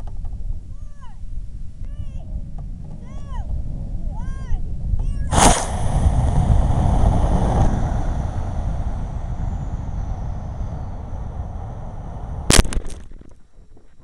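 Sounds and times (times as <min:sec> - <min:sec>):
wind buffeting microphone: 0:00.0 - 0:14.0
rocket motor ignition blast: 0:05.2 - 0:13.3
rocket motor rushing hiss: 0:05.3 - 0:13.3.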